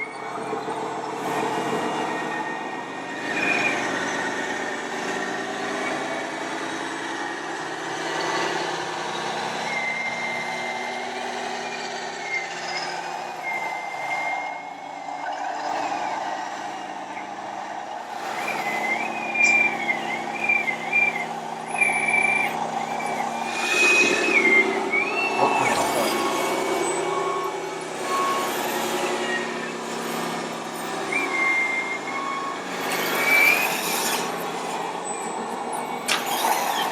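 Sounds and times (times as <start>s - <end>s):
truck engine noise through speakers: 0.0s - 36.9s
wavering high-pitched whine: 12.1s - 34.9s.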